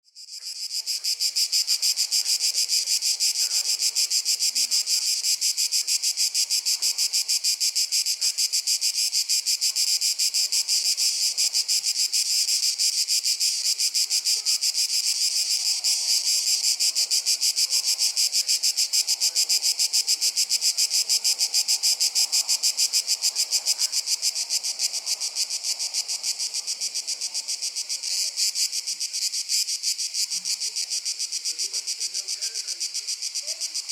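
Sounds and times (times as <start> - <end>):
cicadas buzzing: 0.1 - 33.9.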